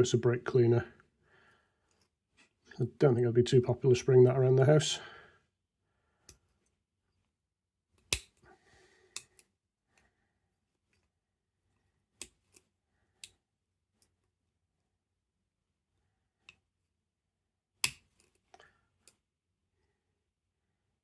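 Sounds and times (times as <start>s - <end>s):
lock picking metallic clicks: 8.0s - 8.4s, 17.8s - 18.3s.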